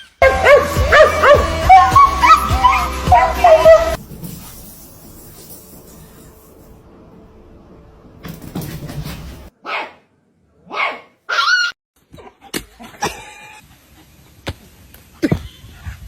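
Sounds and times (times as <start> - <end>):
dog barking: 0.2 - 4.0, 9.6 - 11.7.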